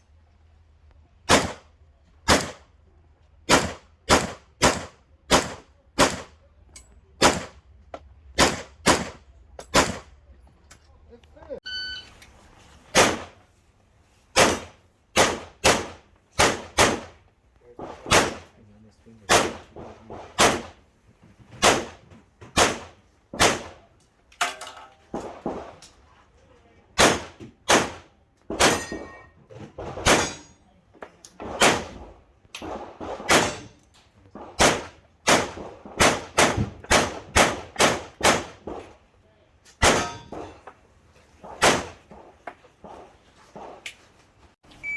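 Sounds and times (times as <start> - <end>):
pistol shots: 1.3 - 2.6, 3.5 - 6.4, 7.2 - 7.6, 8.4 - 10.1, 12.9 - 13.4, 14.4 - 17.2, 17.8 - 18.5, 19.3 - 20.8, 21.6 - 22.0, 22.6 - 23.8, 27.0 - 29.1, 30.0 - 30.5, 31.4 - 33.8, 34.4 - 38.9, 39.8 - 40.6, 41.4 - 42.0.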